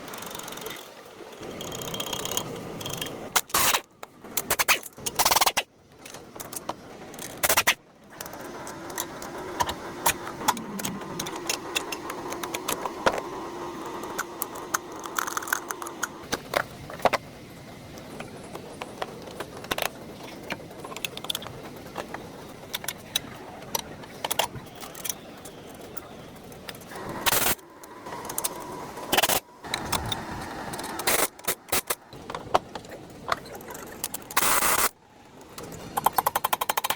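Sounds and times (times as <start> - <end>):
sharp clicks: 35.6 - 36.9.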